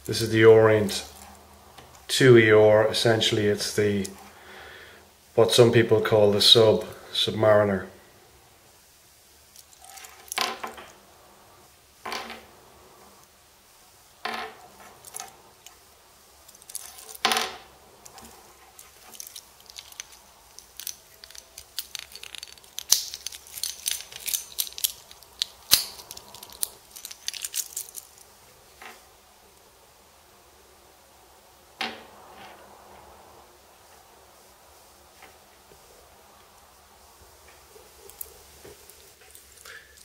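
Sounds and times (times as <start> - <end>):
metal watch bracelet clinking: 18.8 - 28.2.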